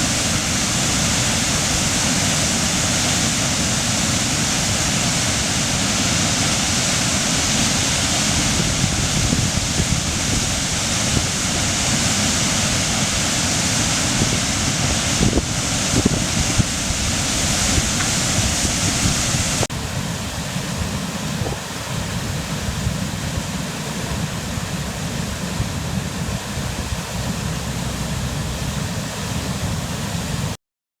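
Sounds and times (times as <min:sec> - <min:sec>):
waterfall rushing: 0:00.0 - 0:30.6.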